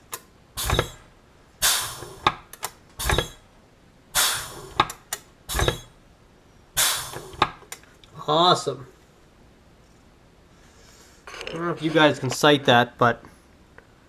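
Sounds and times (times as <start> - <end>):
air hiss of rivet squeezer: 0.6 - 2.3, 3.0 - 3.4, 4.2 - 6.0, 6.8 - 7.6.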